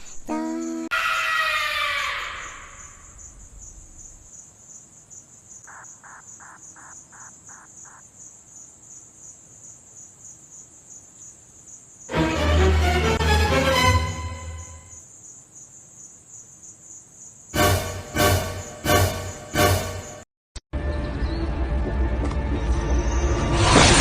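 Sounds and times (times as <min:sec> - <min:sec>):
crickets trilling: 0:00.6 - 0:12.2, 0:14.5 - 0:20.2.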